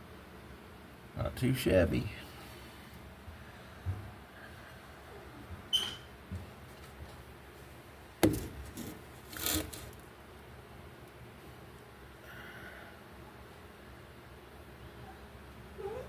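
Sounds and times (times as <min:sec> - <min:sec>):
sharp knock: 0:08.2 - 0:08.6
scraping rub: 0:08.3 - 0:10.0.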